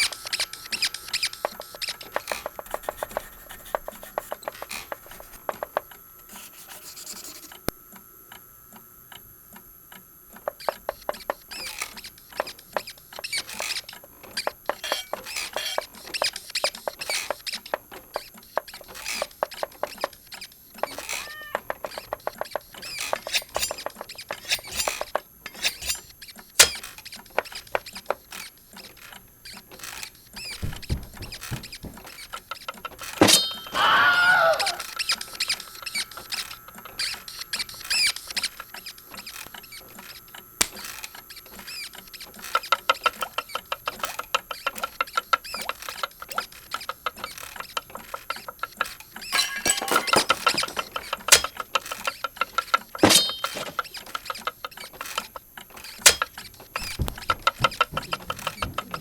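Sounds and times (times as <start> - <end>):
fast ratcheting ticks: 0.0 - 5.9, 34.6 - 49.3
wavering squeal: 33.2 - 38.2, 49.2 - 51.5.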